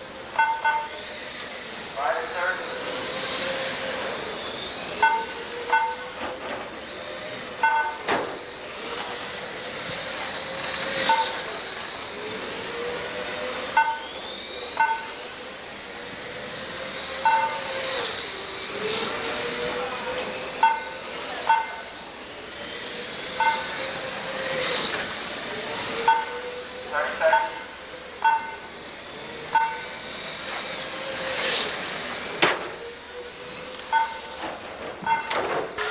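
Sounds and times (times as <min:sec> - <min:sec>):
rc car motors whining: 0:00.0 - 0:35.9
short electronic beeps: 0:07.6 - 0:08.0, 0:33.9 - 0:34.4, 0:35.1 - 0:35.4.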